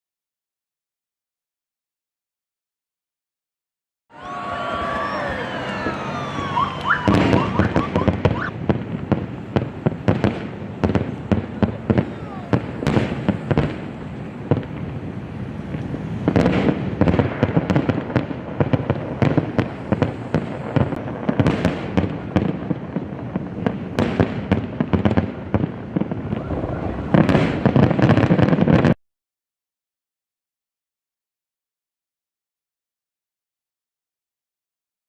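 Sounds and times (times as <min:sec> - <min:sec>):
fireworks bursting and crackling: 0:04.2 - 0:29.0.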